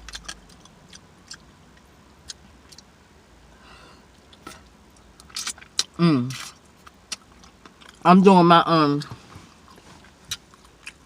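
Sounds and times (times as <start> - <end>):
chewing smacks and clicks: 0.0 - 2.9, 4.3 - 8.0, 9.7 - 11.0.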